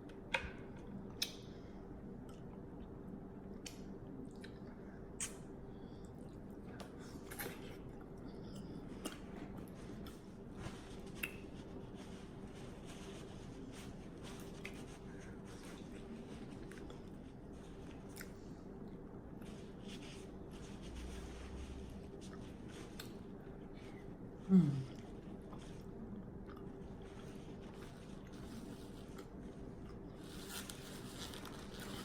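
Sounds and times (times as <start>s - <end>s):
wet chewing and smacking: 2.2s - 10.3s, 15.8s - 19.6s, 24.9s - 30.2s.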